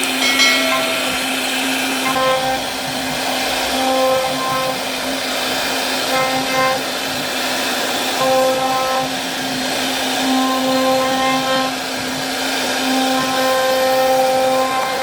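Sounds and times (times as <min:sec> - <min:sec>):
router motor hum: 0:01.2 - 0:15.0.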